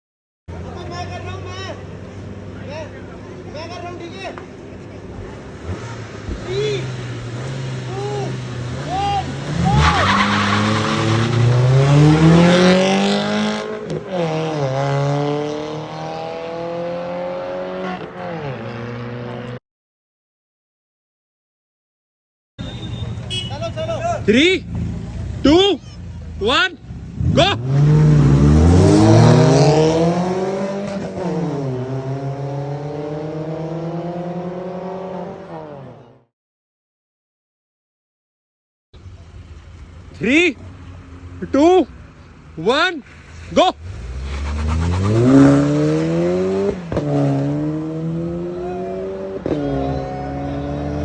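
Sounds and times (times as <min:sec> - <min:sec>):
car engine accelerating hard: 0:05.0 - 0:19.6, 0:27.0 - 0:36.3, 0:43.8 - 0:51.0.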